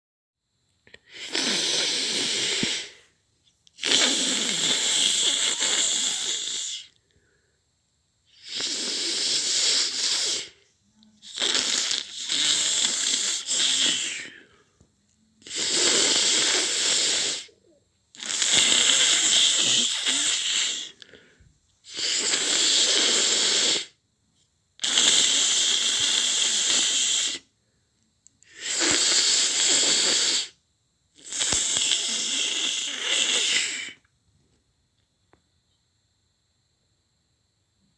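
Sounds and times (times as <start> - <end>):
wheezy hissing snore: 0.9 - 3.2, 3.8 - 7.4, 8.3 - 14.8, 15.4 - 24.0, 24.8 - 27.6, 28.4 - 34.1.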